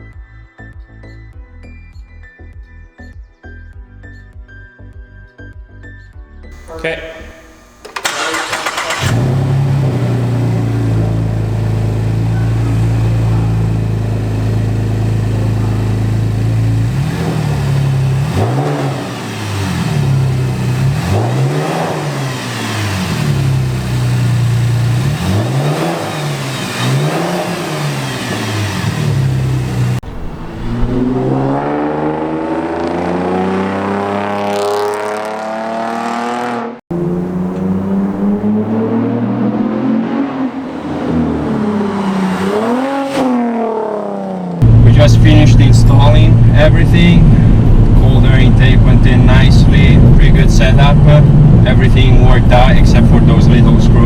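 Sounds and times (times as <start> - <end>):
car engine idling: 6.6 - 30.4, 44.6 - 54.0
car accelerating: 6.6 - 54.0
engine revving in blips: 7.3 - 54.0.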